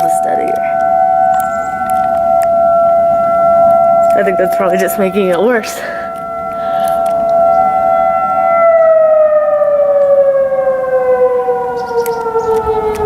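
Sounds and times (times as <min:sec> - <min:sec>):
warning siren falling in pitch: 0:00.0 - 0:13.0.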